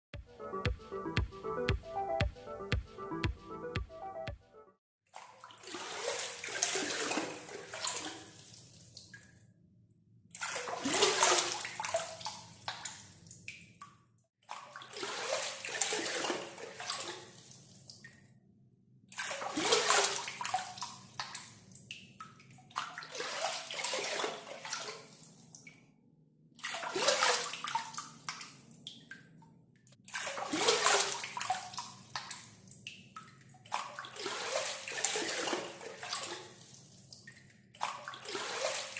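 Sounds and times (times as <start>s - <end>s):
water pouring and splashing: 5.2s - 9.4s, 10.4s - 13.0s, 14.5s - 18.2s, 19.2s - 25.8s, 26.6s - 29.2s, 30.1s - 38.9s.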